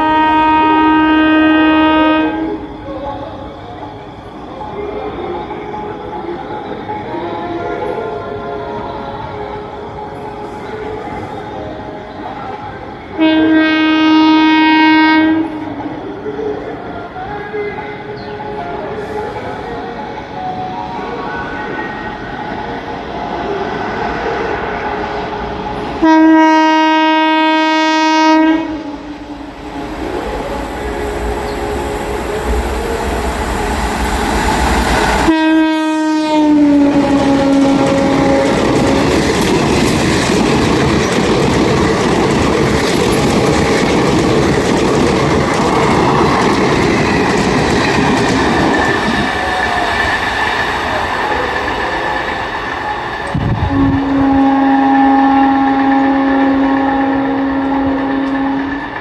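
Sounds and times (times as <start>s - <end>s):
locomotive horn blast: 0.0s - 2.7s, 13.1s - 15.7s, 26.0s - 30.2s, 35.2s - 39.2s, 53.0s - 58.9s
train rumbling over rails: 0.0s - 59.0s.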